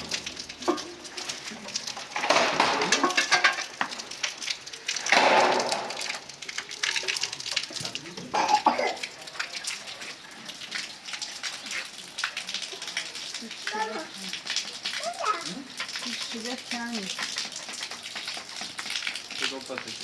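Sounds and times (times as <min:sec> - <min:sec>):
dishes and utensils clinking: 0:02.0 - 0:03.9.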